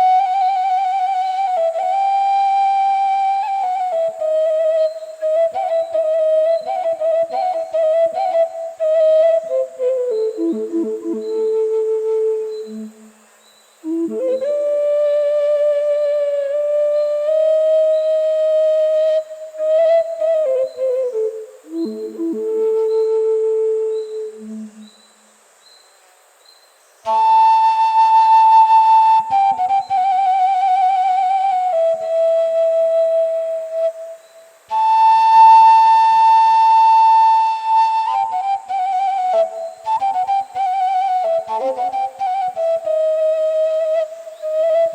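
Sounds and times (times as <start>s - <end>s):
end-blown flute melody: 0.0s - 13.0s, 27.1s - 44.9s.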